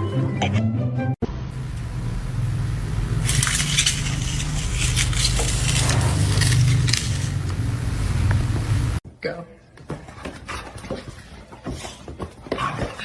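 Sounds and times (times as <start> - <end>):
steady low rumble: 1.2 - 9.0
crackling crunching noises: 3.0 - 7.9.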